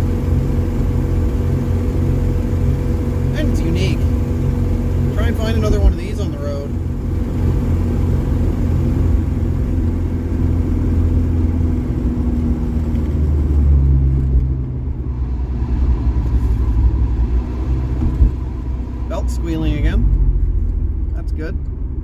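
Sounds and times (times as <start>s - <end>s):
diesel engine drone: 0.0s - 22.0s.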